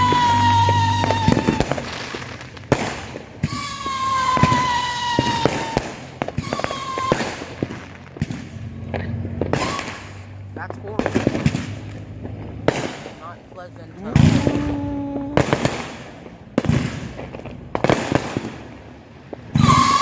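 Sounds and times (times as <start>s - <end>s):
fireworks bangs and pops: 0.0s - 20.0s
fireworks whistling: 0.0s - 20.0s.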